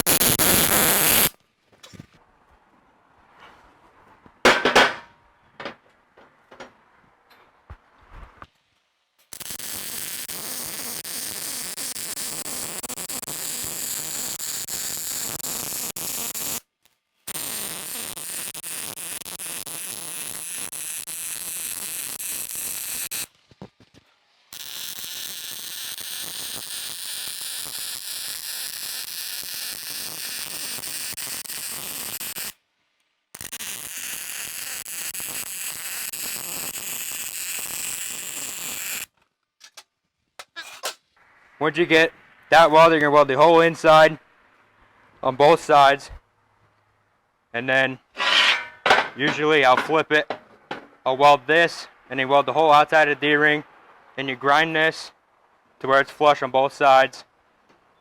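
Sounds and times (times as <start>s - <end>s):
welding arc crackling and sizzling: 0.0s - 1.4s, 9.2s - 39.8s.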